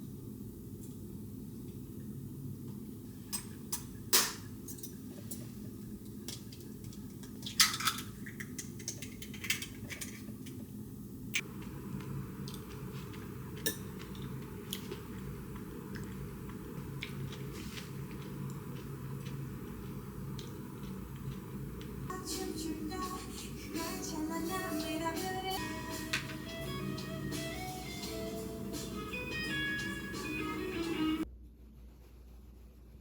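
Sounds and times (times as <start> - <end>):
low steady hum: 0.0 - 33.0.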